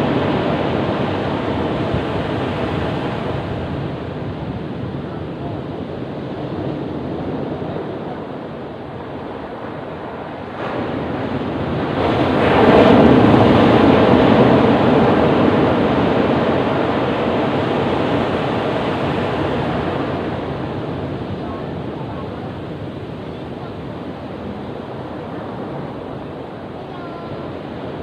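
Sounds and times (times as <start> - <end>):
ocean surf rumbling: 0.0 - 28.0
wave breaking: 0.0 - 28.0.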